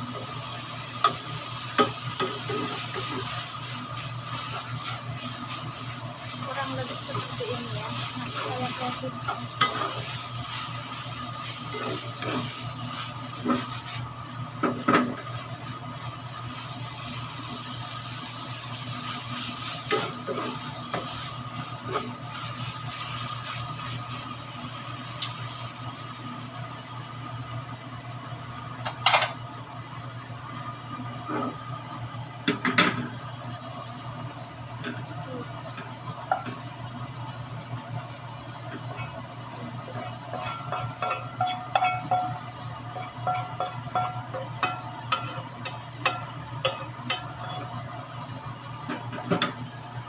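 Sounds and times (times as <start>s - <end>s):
spatula scraping a pan: 1.8s - 14.1s, 19.0s - 24.0s, 38.8s - 39.2s, 39.8s - 47.8s.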